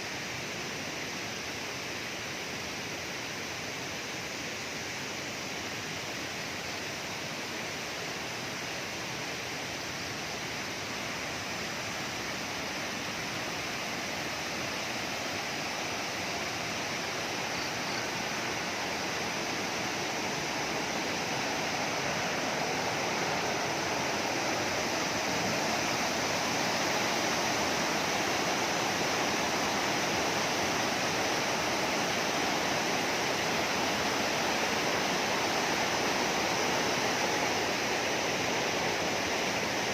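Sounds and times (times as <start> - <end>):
river water rushing over rocks: 0.1 - 39.9.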